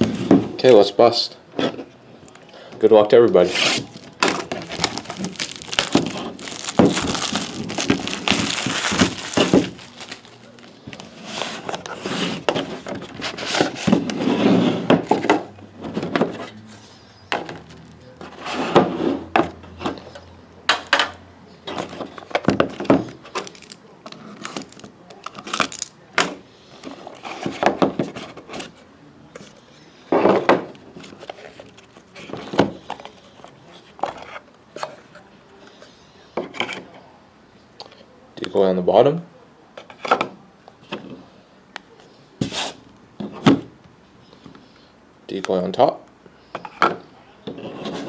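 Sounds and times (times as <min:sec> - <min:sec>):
wrapper and cardboard rustling: 0:03.4 - 0:14.4, 0:21.8 - 0:26.0.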